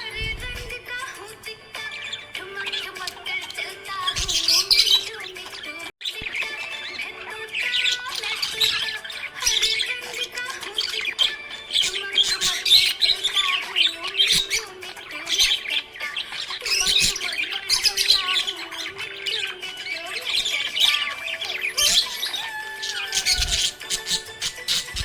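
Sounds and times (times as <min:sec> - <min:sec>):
budgerigar chattering and chirping: 0:06.1 - 0:25.0.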